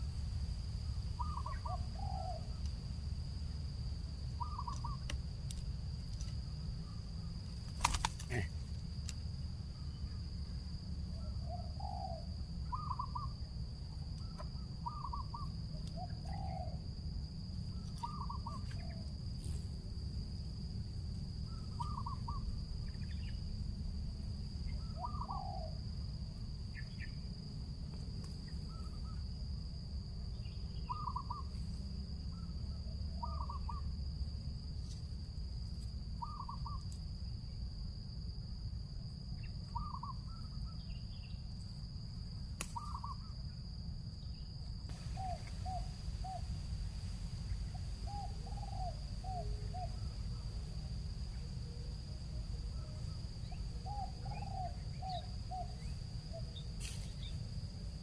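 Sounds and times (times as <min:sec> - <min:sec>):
high insect drone: 0:00.0 - 0:58.0
doves cooing: 0:01.2 - 0:02.5, 0:11.2 - 0:13.3, 0:14.3 - 0:16.8, 0:24.8 - 0:25.8, 0:48.1 - 0:50.2, 0:53.5 - 0:55.8.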